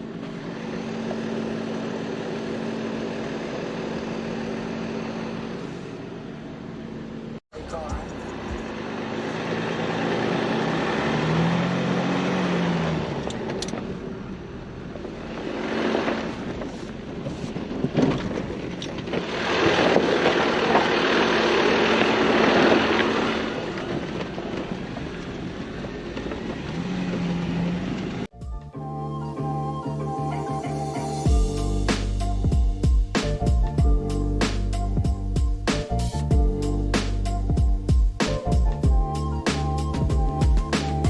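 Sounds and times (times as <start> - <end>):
road and tyre noise: 0.0 - 28.4
off-road vehicle engine running: 0.0 - 41.0.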